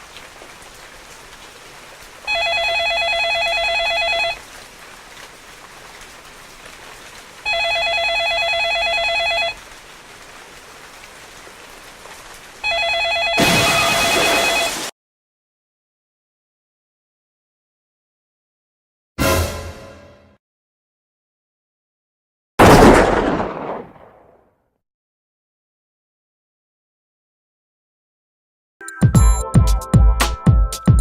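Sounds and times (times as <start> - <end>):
telephone ringing with warbling trill: 2.3 - 4.4, 12.6 - 14.9.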